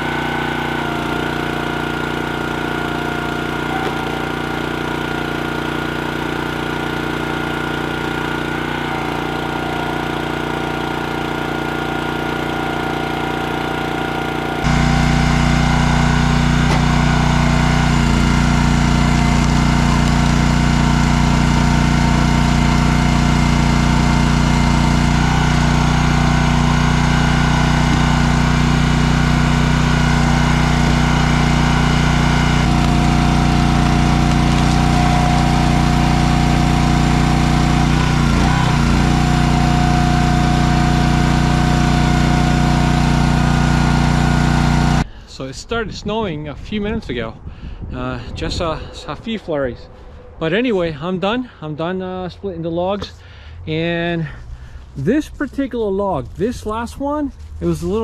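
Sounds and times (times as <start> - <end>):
small gasoline engine running: 0.0 - 45.2.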